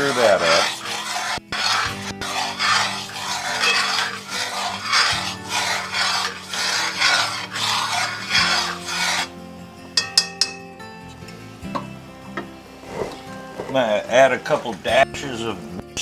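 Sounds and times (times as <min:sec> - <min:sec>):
utensil scraping pot bottom: 0:00.0 - 0:09.3.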